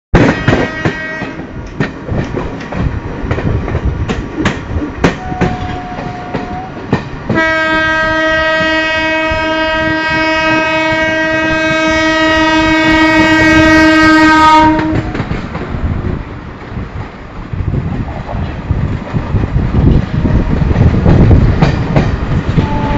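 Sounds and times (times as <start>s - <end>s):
locomotive horn blast: 0.2s - 1.4s, 5.2s - 6.7s, 7.3s - 15.2s, 22.5s - 22.9s
train wheels knocking over rail joints: 0.2s - 15.9s, 19.0s - 22.9s.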